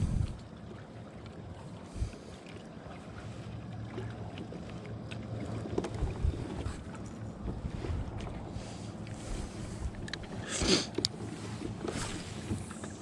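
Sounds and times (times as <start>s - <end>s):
wind on microphone: 0.0s - 0.5s, 5.9s - 10.9s
water around a kayak: 0.0s - 13.0s.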